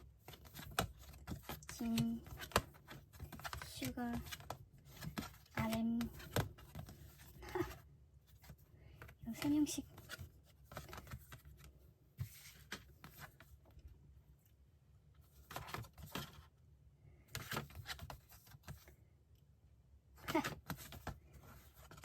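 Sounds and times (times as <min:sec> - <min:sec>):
paper rustling: 0:00.1 - 0:13.6.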